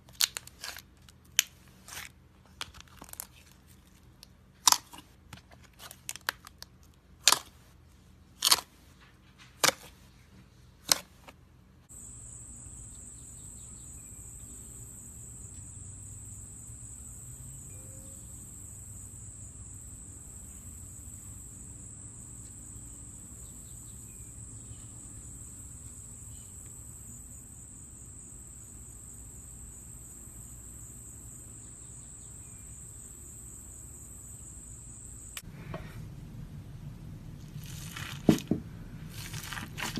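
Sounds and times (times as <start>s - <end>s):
high-pitched whine: 11.9s - 18.8s
low hum: 34.9s - 39.9s
slime popping: 39.1s - 39.9s.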